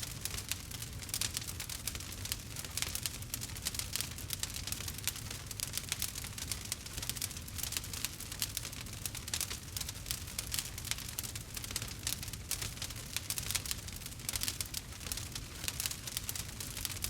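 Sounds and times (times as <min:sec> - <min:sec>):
campfire crackling: 0:00.0 - 0:17.0.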